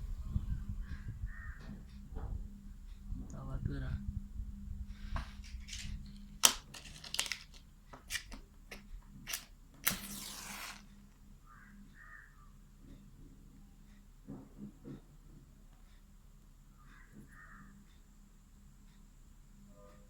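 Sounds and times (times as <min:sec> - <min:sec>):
packaging rustle: 0:05.2 - 0:11.0
cardboard packaging crumpling: 0:05.4 - 0:08.4, 0:09.3 - 0:10.9.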